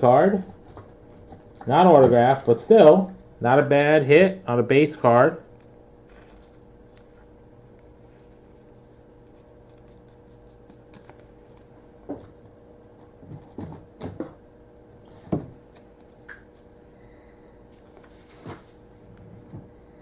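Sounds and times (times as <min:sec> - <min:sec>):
faint electrical hum: 0:00.0 - 0:20.0
cards and plastic sleeves handled: 0:06.0 - 0:11.8.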